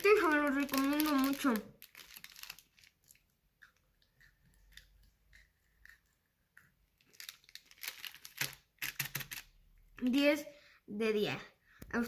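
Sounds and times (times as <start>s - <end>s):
faint chewing of biscuit stick: 3.0s - 7.4s.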